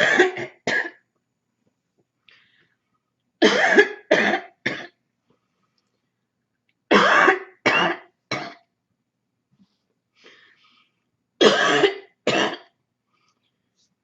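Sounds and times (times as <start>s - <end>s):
person coughing harshly: 0.0s - 1.0s, 3.4s - 5.0s, 6.9s - 8.6s, 11.4s - 12.7s.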